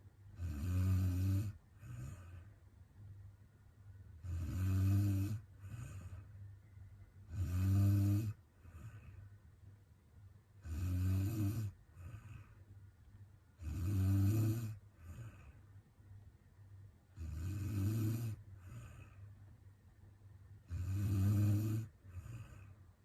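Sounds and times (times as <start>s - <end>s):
woman snoring: 0.4s - 2.4s, 4.2s - 6.2s, 7.3s - 9.0s, 10.6s - 12.5s, 13.6s - 15.5s, 17.2s - 19.0s, 20.7s - 22.7s.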